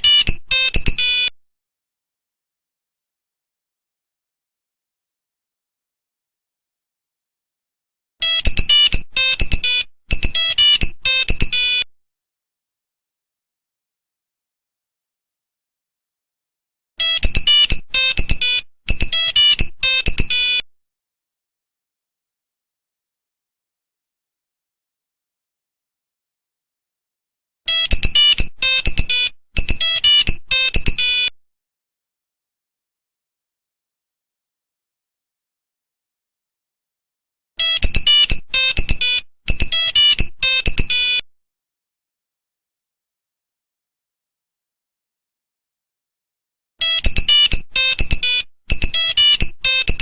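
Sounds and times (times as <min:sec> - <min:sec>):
mobile phone ringtone beeping: 0:00.0 - 0:01.3, 0:08.2 - 0:11.8, 0:17.0 - 0:20.6, 0:27.7 - 0:31.3, 0:37.6 - 0:41.2, 0:46.8 - 0:50.0.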